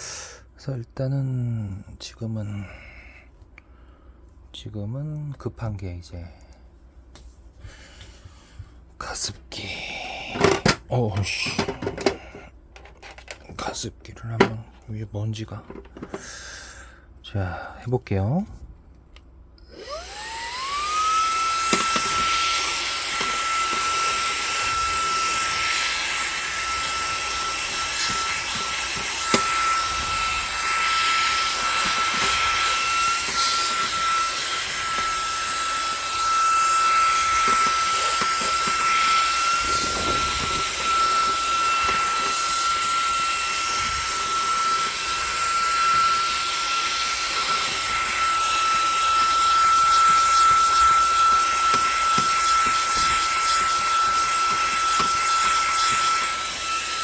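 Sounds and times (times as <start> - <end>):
handheld vacuum cleaner whine: 9.6 - 13.4, 14.4 - 14.6, 15.4 - 16.4, 19.6 - 57.0.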